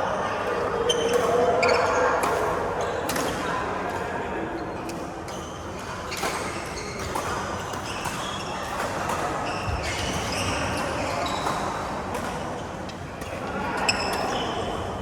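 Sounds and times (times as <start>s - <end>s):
shoes squeaking on floor: 5.3s - 8.7s, 9.4s - 11.8s.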